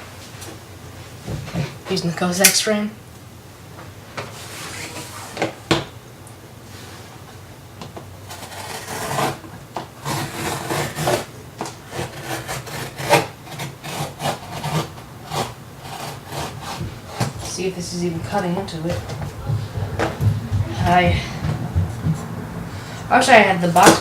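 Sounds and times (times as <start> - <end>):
blade sawing plastic packaging: 8.2 - 17.6.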